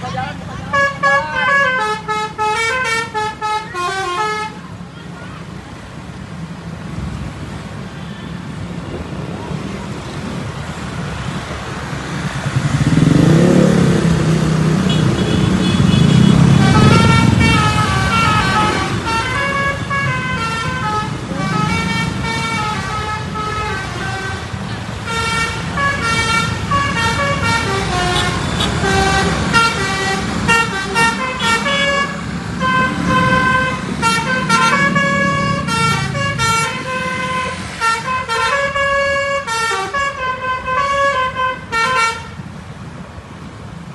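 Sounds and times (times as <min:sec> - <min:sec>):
bus engine: 0:00.0 - 0:43.9
bus musical horn tune: 0:00.7 - 0:04.6, 0:16.6 - 0:24.5, 0:25.1 - 0:42.4.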